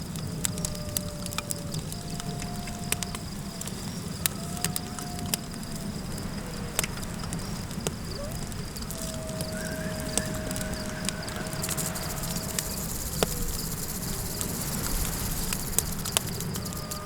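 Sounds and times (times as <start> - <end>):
campfire crackling and popping: 0.0 - 17.0
insect chirring: 0.0 - 17.0
low wind rumble: 0.0 - 17.0
long drawn-out tone: 8.2 - 17.0.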